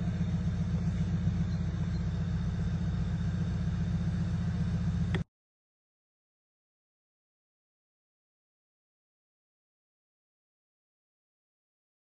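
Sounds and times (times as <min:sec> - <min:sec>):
car engine idling: 0:00.0 - 0:05.2.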